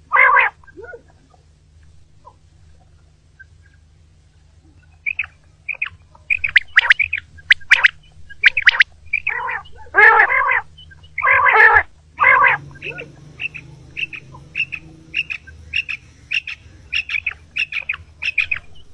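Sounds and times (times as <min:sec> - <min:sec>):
faint low hum: 0:00.0 - 0:18.9
quail calling: 0:00.1 - 0:01.1, 0:04.8 - 0:18.9.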